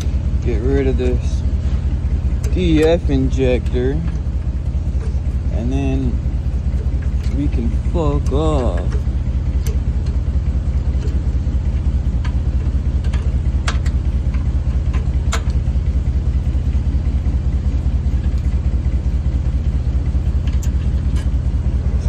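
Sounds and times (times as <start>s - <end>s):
diesel engine idling: 0.0s - 22.0s
wrench clicking: 8.2s - 10.2s, 10.8s - 11.3s, 12.2s - 15.6s.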